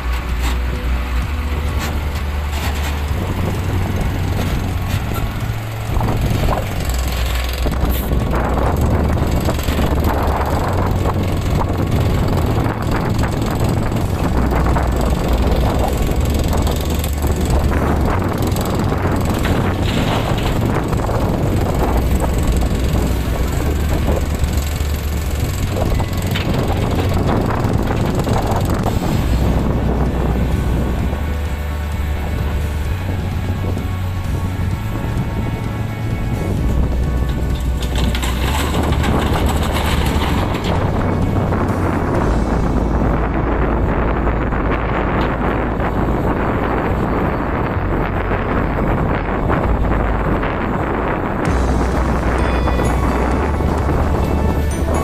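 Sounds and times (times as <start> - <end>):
rough crackling noise: 0.0 - 30.2, 36.6 - 45.6
excavator diesel engine rumble: 0.0 - 55.0.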